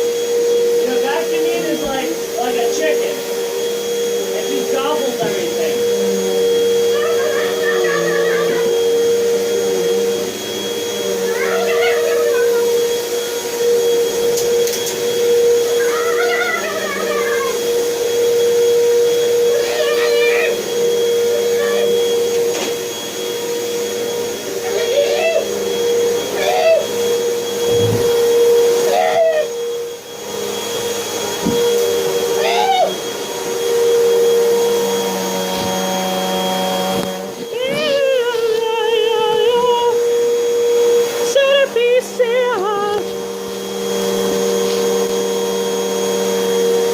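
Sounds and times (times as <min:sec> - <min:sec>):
vacuum cleaner running: 0:00.0 - 0:46.9
rising and falling squeal: 0:25.4 - 0:38.0.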